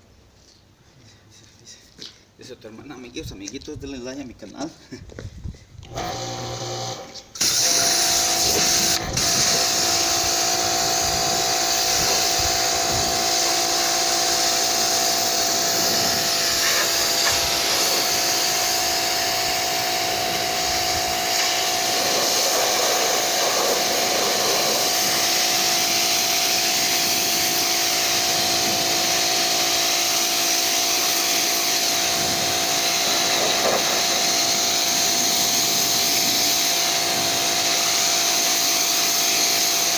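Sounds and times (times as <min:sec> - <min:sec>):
vacuum cleaner running: 0:05.9 - 0:39.9.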